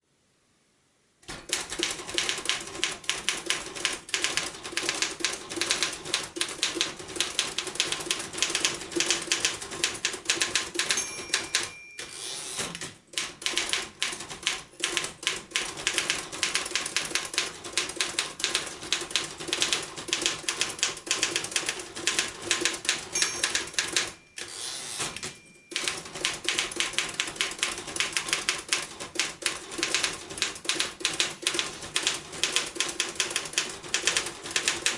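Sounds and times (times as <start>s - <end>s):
typewriter carriage return: 1.2s - 34.9s
typewriter keys clacking: 1.4s - 34.9s
typewriter end-of-line bell: 10.3s - 12.8s, 22.7s - 27.2s.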